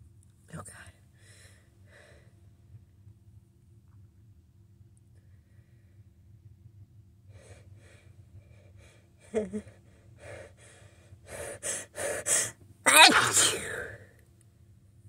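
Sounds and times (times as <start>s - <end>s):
person gasping before sneeze: 12.3s - 14.0s.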